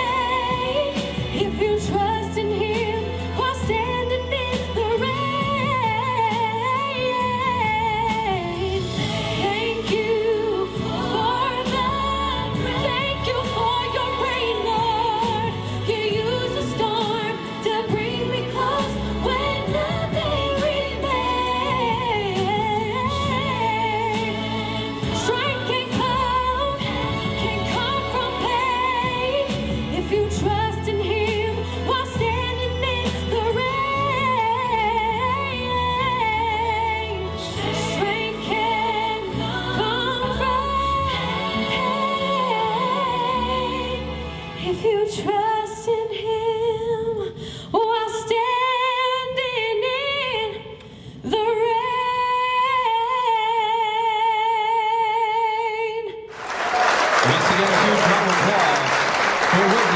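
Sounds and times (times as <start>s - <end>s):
instrumental accompaniment with bass: 0.0s - 46.9s
woman singing with vibrato: 0.0s - 56.3s
applause: 56.3s - 59.9s.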